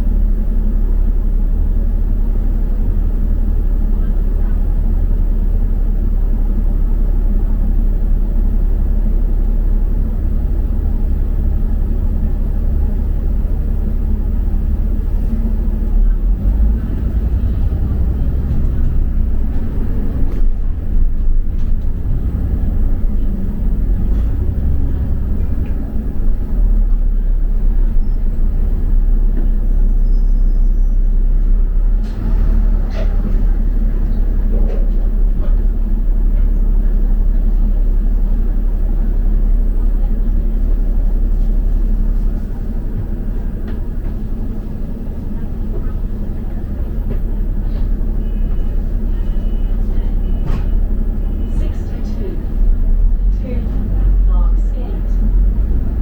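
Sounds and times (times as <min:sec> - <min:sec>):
bus engine and road rumble: 0:00.0 - 0:56.0.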